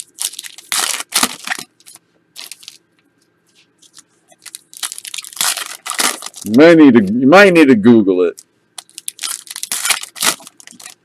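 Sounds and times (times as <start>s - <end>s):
card pack wrappers rustling: 0.0s - 2.9s, 3.8s - 6.6s, 8.8s - 11.0s.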